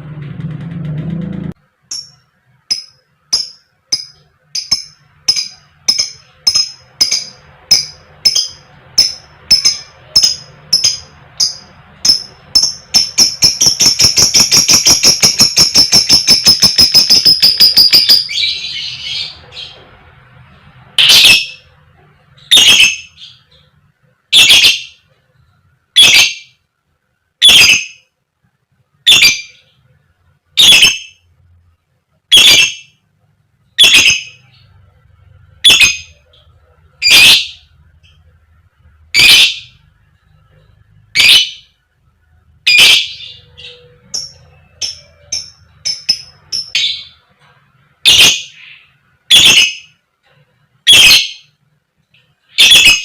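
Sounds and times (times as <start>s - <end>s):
lovebird chirping and trilling: 1.9s - 19.8s, 21.0s - 21.8s, 22.4s - 23.7s, 24.3s - 25.0s, 26.0s - 26.6s, 27.4s - 28.1s, 29.0s - 29.8s, 30.6s - 31.2s, 32.3s - 33.0s, 33.8s - 34.8s, 35.6s - 38.2s, 39.1s - 39.8s, 41.1s - 41.8s, 42.6s - 47.2s, 48.0s - 50.0s, 50.8s - 51.6s, 52.4s - 53.0s.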